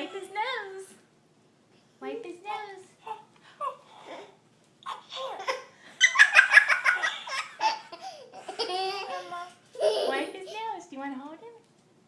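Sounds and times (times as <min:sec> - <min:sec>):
high-pitched laughter: 0:05.2 - 0:10.3.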